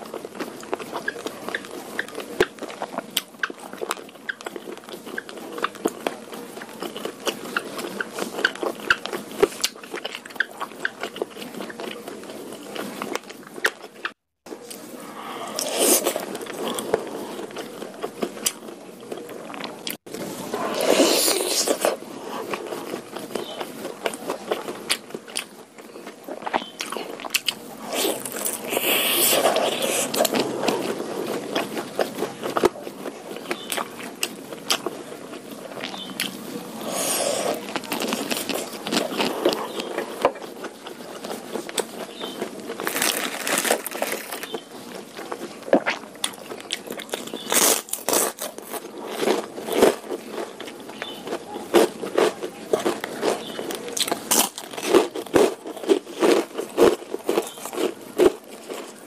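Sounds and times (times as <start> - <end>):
close chewing and mouth sounds: 0.0 - 59.0
crunchy bites: 12.7 - 59.0.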